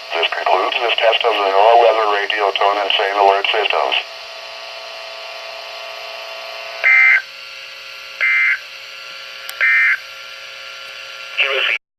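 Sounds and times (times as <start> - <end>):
radio hiss: 0.0 - 4.2, 11.3 - 11.8.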